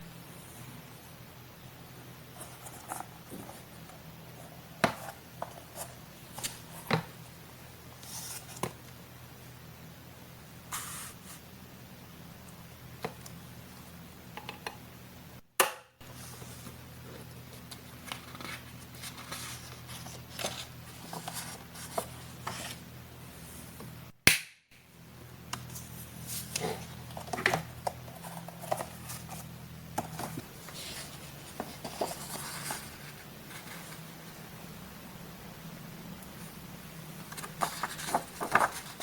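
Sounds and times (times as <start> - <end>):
faint low hum: 0.0 - 39.0
paper rustling and crinkling: 16.1 - 22.8, 25.6 - 34.2, 37.3 - 39.0.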